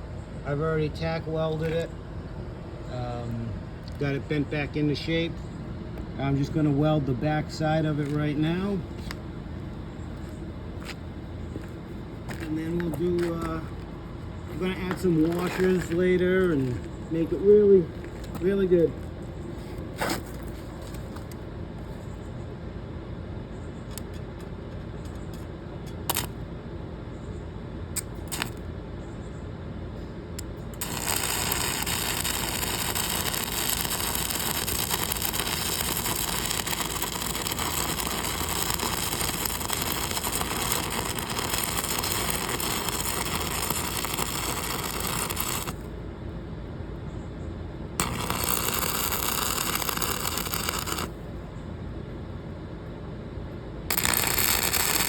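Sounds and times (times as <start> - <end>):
low hum: 7.0 - 55.0
welding arc hissing: 26.1 - 26.3, 28.0 - 28.6, 30.8 - 45.9, 48.0 - 51.2, 53.9 - 55.0.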